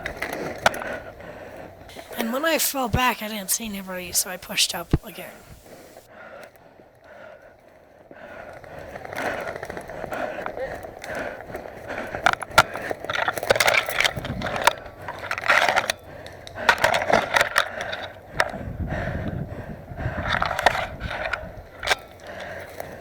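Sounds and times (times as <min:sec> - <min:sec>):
footsteps crunching on dry ground: 0:01.9 - 0:06.1
gear rustling: 0:07.5 - 0:18.8.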